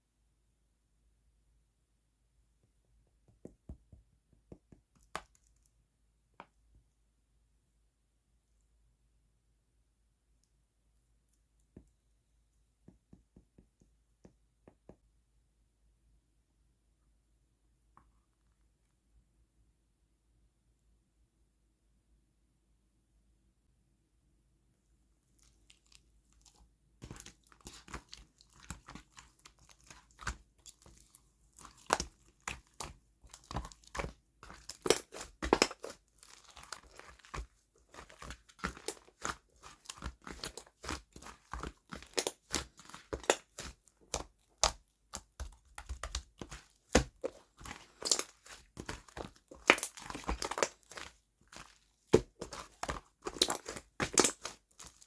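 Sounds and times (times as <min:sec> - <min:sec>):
slime popping and crackling: 0:25.7 - 0:55.0.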